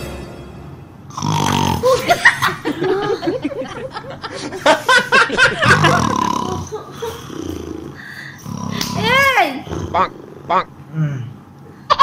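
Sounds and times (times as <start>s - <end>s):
man fake snoring: 1.1s - 1.9s, 5.6s - 11.2s.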